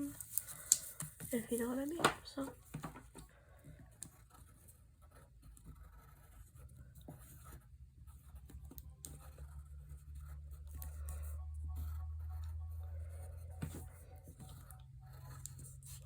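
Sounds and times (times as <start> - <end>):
pencil scratching on paper: 3.4 - 16.0
low hum: 7.6 - 16.0.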